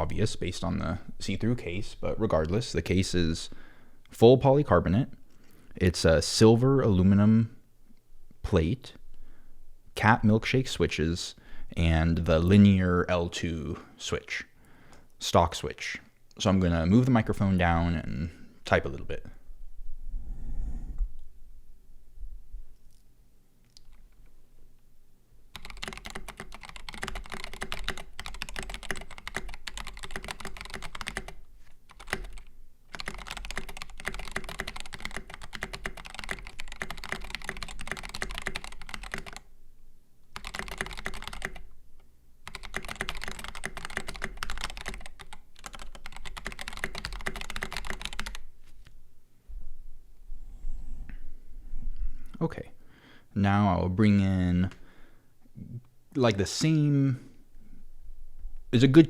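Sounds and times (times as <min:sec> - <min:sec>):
keyboard typing: 0:25.5 - 0:39.5, 0:40.3 - 0:41.7, 0:42.4 - 0:48.5.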